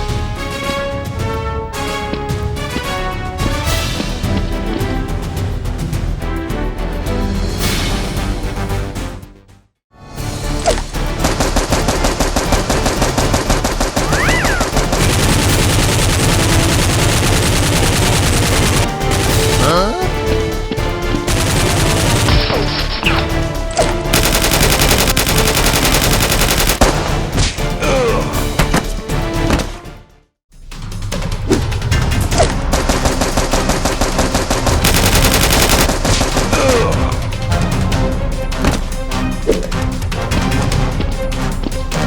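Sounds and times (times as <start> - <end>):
automatic gunfire: 11.2 - 18.9, 24.1 - 27.0, 32.7 - 36.8.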